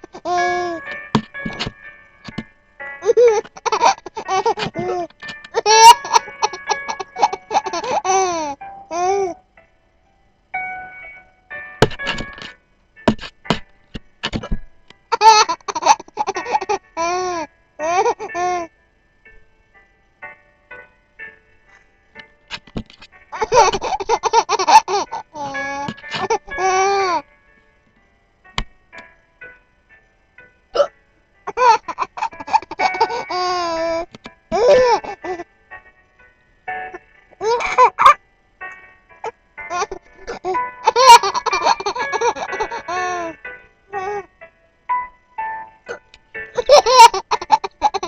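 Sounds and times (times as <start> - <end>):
baby laughing: 0.0 - 0.8, 3.0 - 9.4, 14.2 - 18.7, 23.4 - 27.2, 31.5 - 35.4, 37.4 - 38.2, 39.7 - 43.4, 46.6 - 48.0
baby squealing: 3.0 - 9.4, 31.5 - 35.1, 39.7 - 43.3, 46.6 - 48.0.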